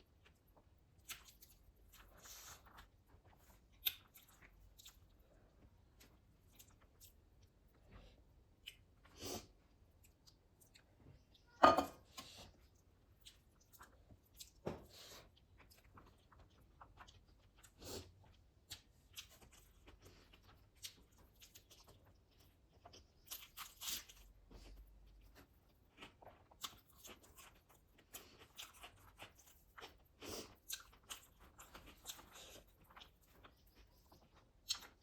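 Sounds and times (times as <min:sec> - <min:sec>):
crunching bites and chewing: 0:00.2 - 0:05.3, 0:12.8 - 0:35.0.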